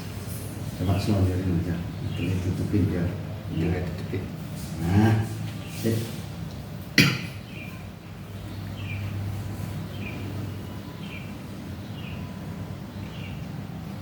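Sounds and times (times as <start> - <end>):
bird chirping: 7.2 - 13.6.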